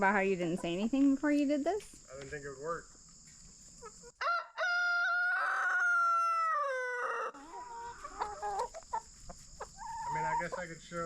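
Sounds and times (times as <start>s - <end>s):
rooster crowing: 4.2s - 8.6s.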